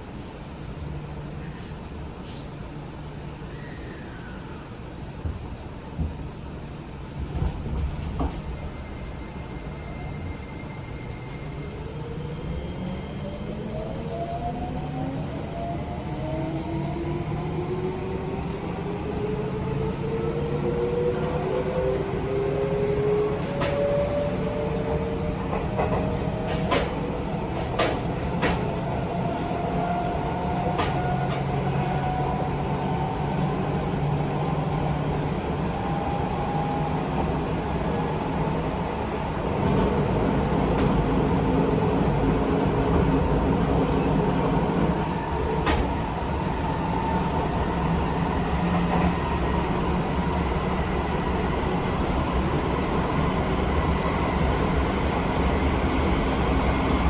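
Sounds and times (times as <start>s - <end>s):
wheels rumbling on rail: 4.7s - 57.0s
rail joint clicks: 7.2s - 8.7s, 23.4s - 24.0s, 24.9s - 34.8s, 38.5s - 41.2s, 42.6s - 54.0s.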